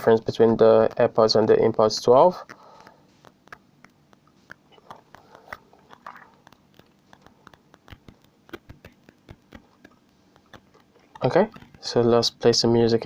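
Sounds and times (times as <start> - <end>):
small clicks and taps of handling earbuds: 6.4 - 10.9.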